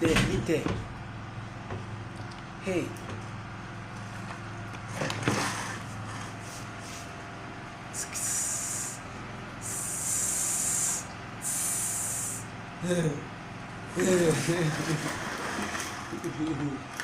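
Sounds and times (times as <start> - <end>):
hissing sounds: 9.6 - 12.5.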